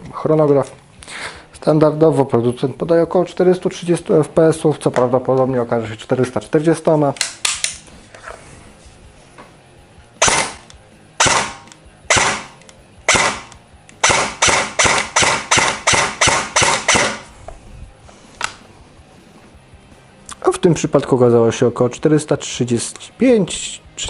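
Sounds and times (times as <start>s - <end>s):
airsoft rifle shots: 10.2s - 17.3s.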